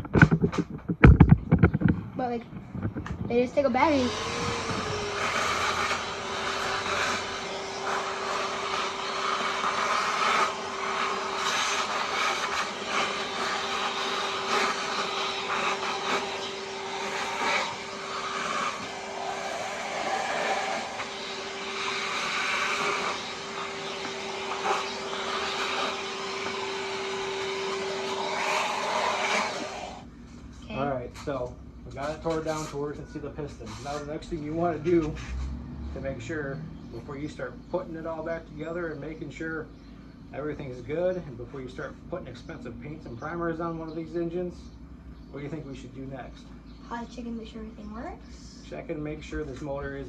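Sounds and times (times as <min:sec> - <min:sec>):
knocks and clatter: 0:00.0 - 0:03.8
motor humming: 0:00.0 - 0:50.0.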